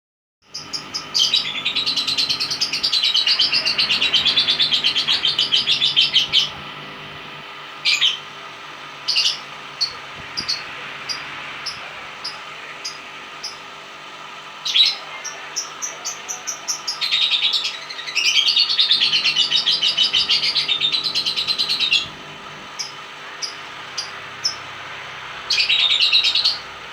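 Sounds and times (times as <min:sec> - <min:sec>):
lovebird chattering trill: 0:00.6 - 0:07.2, 0:09.0 - 0:13.7, 0:14.7 - 0:24.7.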